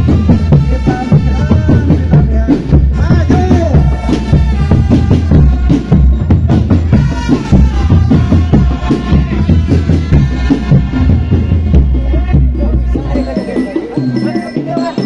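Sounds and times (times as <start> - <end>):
drum band playing: 0.0 - 15.0.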